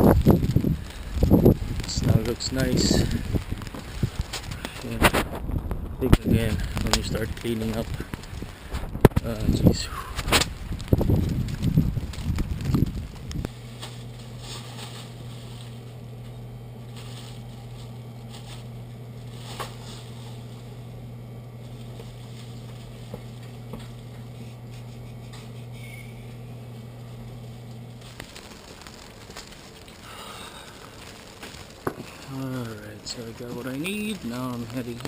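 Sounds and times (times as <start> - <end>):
faint clicks and rustles: 0.0 - 35.0
low machine hum: 0.0 - 35.0.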